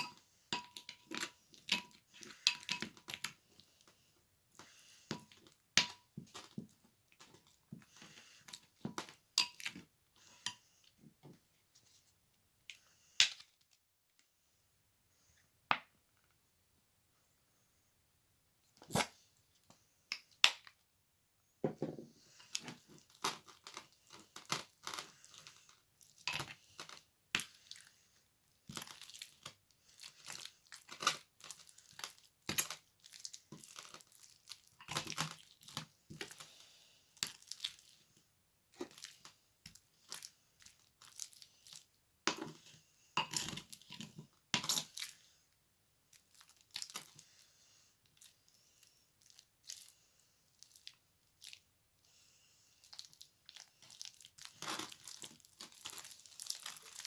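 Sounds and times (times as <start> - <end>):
slime crackling and popping: 52.9 - 57.0.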